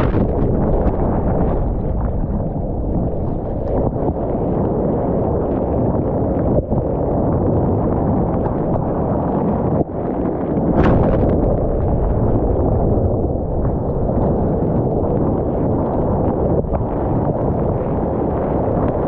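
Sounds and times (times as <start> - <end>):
water and surf rushing: 0.0 - 6.7
wind buffeting microphone: 0.0 - 19.0.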